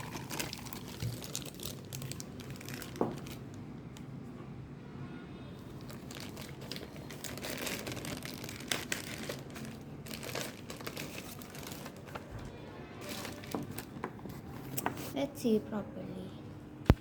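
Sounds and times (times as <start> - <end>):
packaging crinkling and rustling: 0.0 - 3.7, 5.6 - 15.2.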